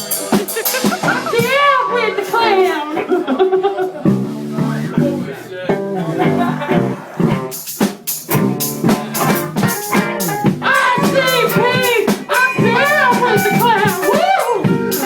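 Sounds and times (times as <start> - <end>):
rattling percussion beat: 0.0 - 1.7, 6.6 - 15.0
live band playing: 0.0 - 15.0.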